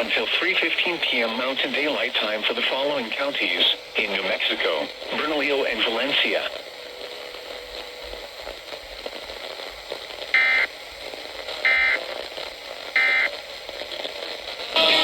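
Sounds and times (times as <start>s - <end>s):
faint radio hiss: 0.0s - 15.0s
buzzy digital data bursts: 14.8s - 15.0s.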